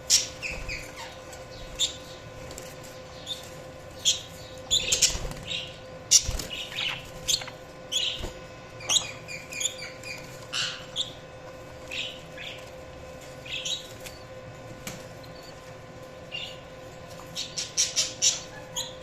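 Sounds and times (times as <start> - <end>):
budgerigars chirping: 3.2 - 8.2.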